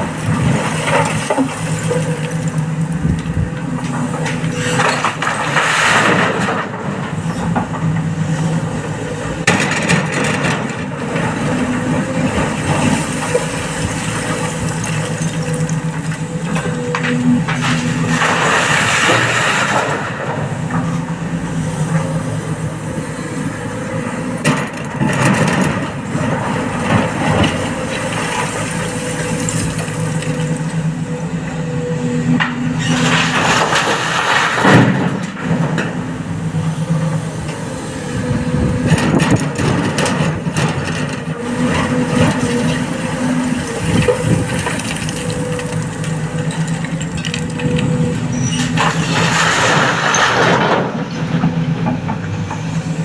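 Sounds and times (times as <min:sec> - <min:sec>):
excavator diesel engine running: 0:00.0 - 0:53.0
stones crashing into steel truck bed: 0:48.7 - 0:51.1.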